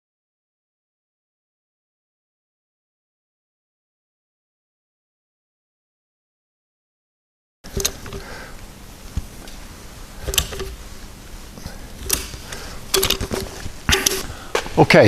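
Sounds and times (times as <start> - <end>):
sharp clicks and knocks: 7.7 - 8.4, 10.2 - 10.9, 12.0 - 14.2
low room hiss: 7.7 - 15.0.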